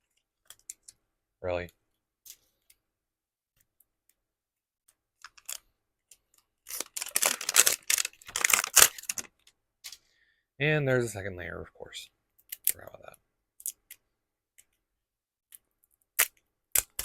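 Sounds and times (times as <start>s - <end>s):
packaging rustling and ripping: 6.6s - 9.3s.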